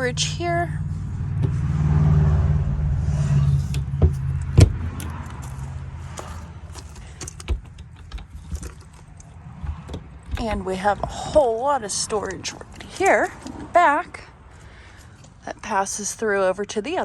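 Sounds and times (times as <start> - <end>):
vehicle engine humming: 0.0 - 17.0
keys jangling: 5.0 - 9.3.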